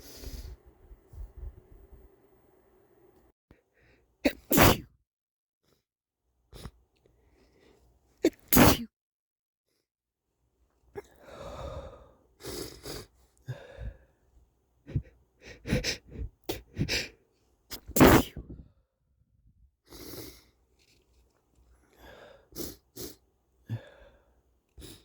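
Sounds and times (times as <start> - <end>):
noisy breathing: 0.0 - 0.6, 11.2 - 14.2, 14.9 - 17.2
man sneezing: 4.3 - 4.8, 8.2 - 8.9, 17.7 - 18.5.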